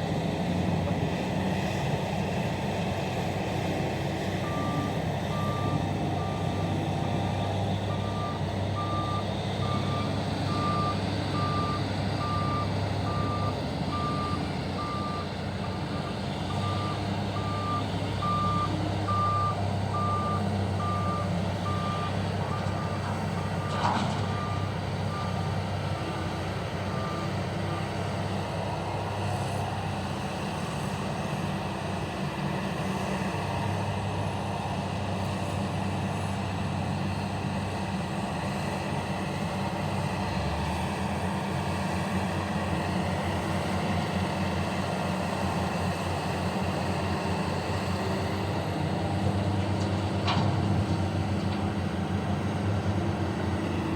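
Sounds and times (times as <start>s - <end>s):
heavy diesel machinery running: 0.0s - 53.9s
truck reversing alarm beeping: 4.2s - 28.4s.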